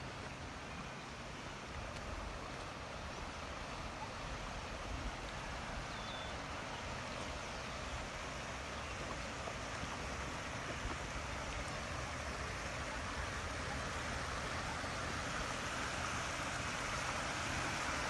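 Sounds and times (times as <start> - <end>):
floodwater rushing: 0.0 - 18.0.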